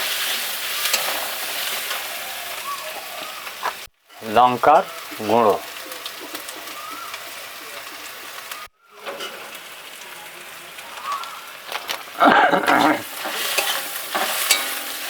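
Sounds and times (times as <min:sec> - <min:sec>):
onions sizzling in hot oil: 0:00.0 - 0:12.2, 0:13.0 - 0:15.0.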